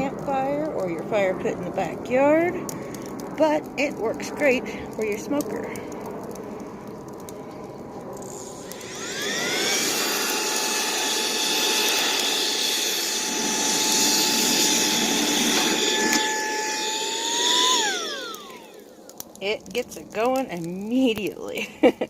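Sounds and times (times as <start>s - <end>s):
handheld vacuum motor whining: 8.1s - 19.3s.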